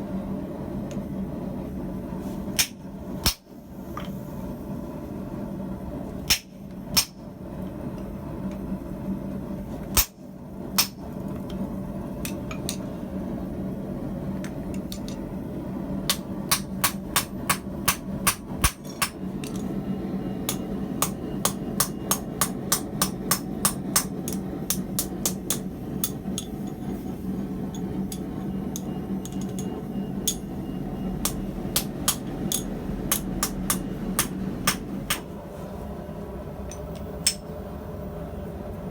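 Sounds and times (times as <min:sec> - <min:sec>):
steady hum: 0:00.0 - 0:38.9
hammer striking steel on anvil: 0:10.8 - 0:11.0, 0:16.1 - 0:19.6, 0:20.5 - 0:26.8, 0:31.2 - 0:35.3, 0:36.7 - 0:37.5.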